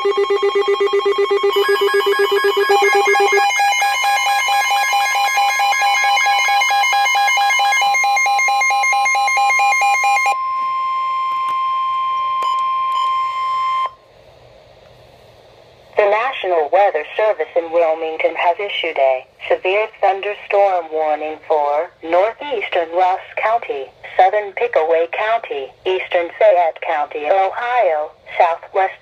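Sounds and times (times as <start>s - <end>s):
fast-pulsing electronic beep: 0.0s - 6.5s
steady warning alarm tone: 0.0s - 14.0s.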